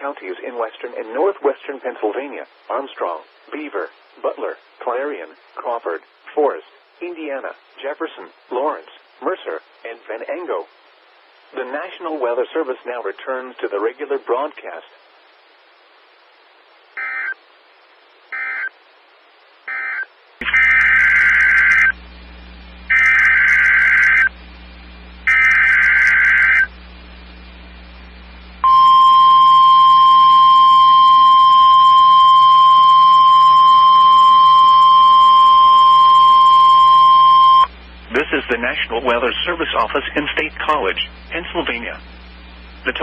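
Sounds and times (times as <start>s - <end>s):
steady warning alarm tone: 18.3s - 18.7s, 19.7s - 22.0s, 22.9s - 24.3s, 25.2s - 26.8s, 28.6s - 37.7s
digital data bursts: 19.7s - 22.0s, 22.9s - 24.3s, 25.2s - 26.7s
low hum: 20.4s - 43.0s.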